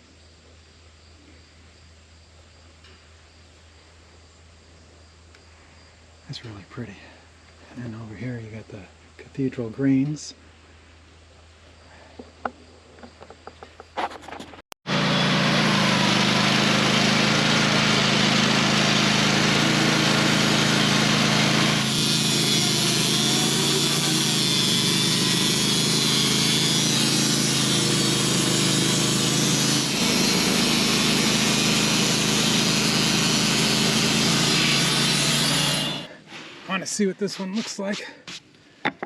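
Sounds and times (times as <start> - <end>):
sawmill engine under load: 14.9 - 38.2
blade sawing through log: 14.9 - 38.5.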